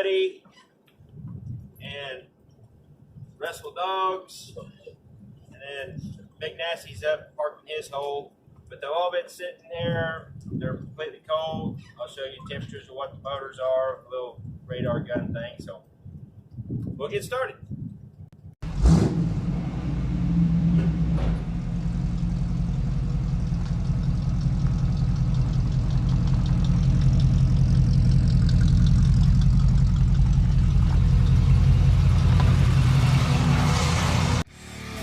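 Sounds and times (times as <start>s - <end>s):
pickup truck engine running: 18.6s - 34.4s.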